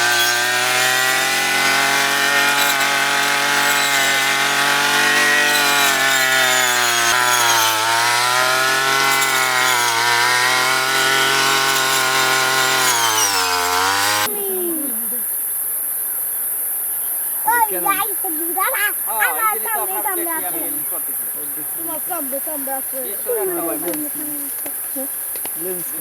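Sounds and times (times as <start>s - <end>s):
small petrol engine buzzing: 0.0s - 14.3s.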